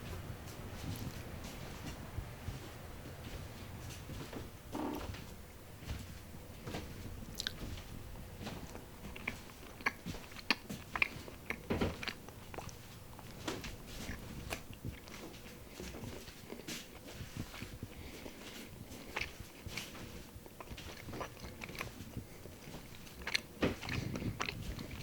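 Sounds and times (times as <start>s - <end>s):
crunchy bread chewing: 6.6s - 25.0s.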